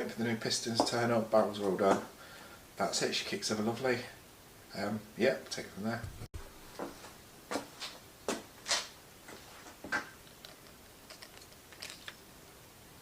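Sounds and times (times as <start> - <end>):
tools and engine parts clicking: 10.2 - 12.2.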